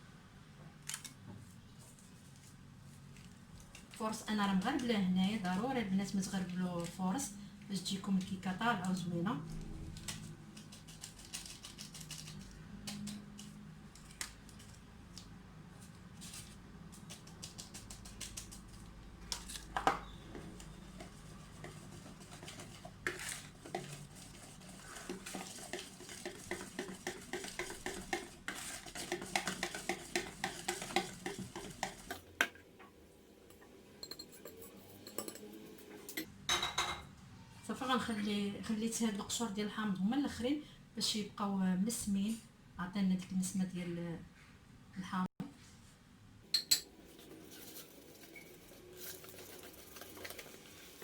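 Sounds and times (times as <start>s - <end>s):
utensil scraping mixing bowl: 17.4s - 32.3s, 47.0s - 51.0s.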